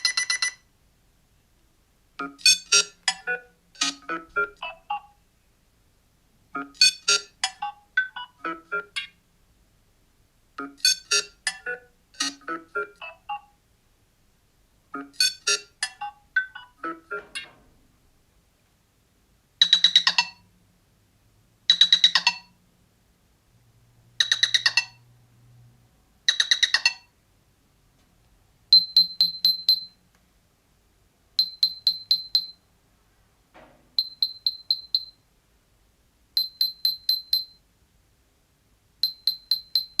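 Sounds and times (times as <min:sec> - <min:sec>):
melodic ringtone chime: 0:00.0 - 0:00.6, 0:28.7 - 0:30.0, 0:31.4 - 0:32.6, 0:34.0 - 0:35.2, 0:36.4 - 0:37.6, 0:39.0 - 0:40.0
buzzy phone ring: 0:00.0 - 0:00.7, 0:02.2 - 0:05.2, 0:10.6 - 0:13.5, 0:15.0 - 0:17.4, 0:28.7 - 0:30.0, 0:31.4 - 0:32.6, 0:34.0 - 0:35.2, 0:36.4 - 0:37.6, 0:39.0 - 0:40.0
high ticking tones: 0:28.7 - 0:30.0, 0:31.4 - 0:32.6, 0:34.0 - 0:35.2, 0:36.4 - 0:37.6, 0:39.0 - 0:40.0.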